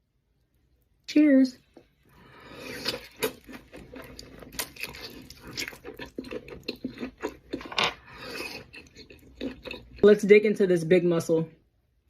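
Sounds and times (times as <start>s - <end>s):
person chewing: 2.1s - 10.0s.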